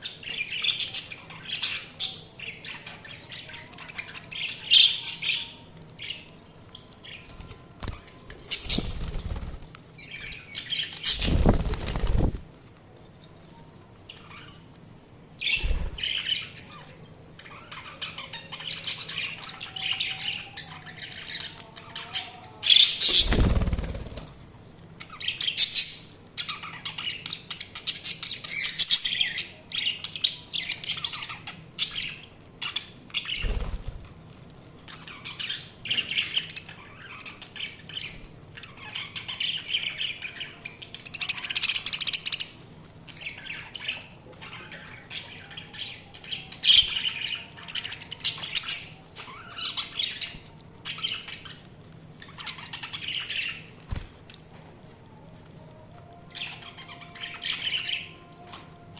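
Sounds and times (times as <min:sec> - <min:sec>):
budgerigars chirping and chattering: 0:00.0 - 0:06.3, 0:07.9 - 0:12.4, 0:15.4 - 0:24.3, 0:34.9 - 0:53.8, 0:56.4 - 0:58.2.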